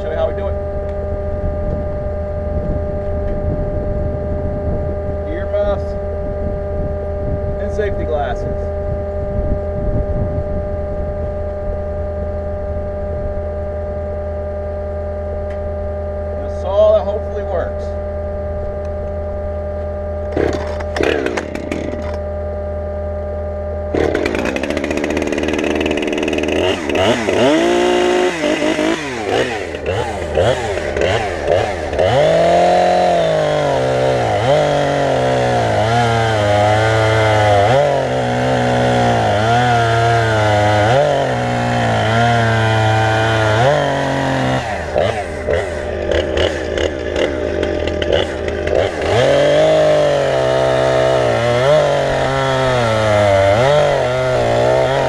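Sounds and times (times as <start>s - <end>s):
steady engine hum: 0.0s - 55.0s
chainsaw revving and cutting logs: 19.9s - 22.4s, 23.9s - 55.0s.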